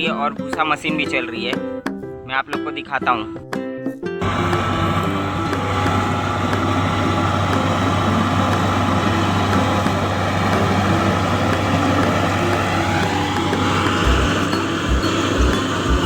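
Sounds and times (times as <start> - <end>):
farm machinery engine hum: 4.2 - 16.0
threshing and cutting noise: 4.2 - 16.0.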